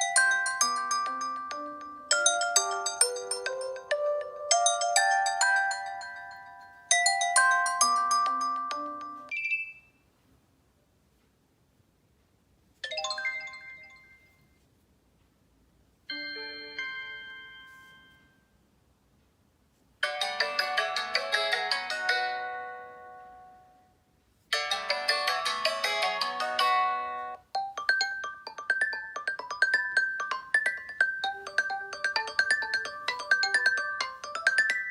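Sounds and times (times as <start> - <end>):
quick rhythmic ringtone: 0.0 - 9.9, 20.0 - 23.0, 24.5 - 34.9
chiming ringtone melodies: 0.0 - 10.0, 12.8 - 14.6, 16.1 - 18.5, 20.0 - 23.7, 24.5 - 34.9.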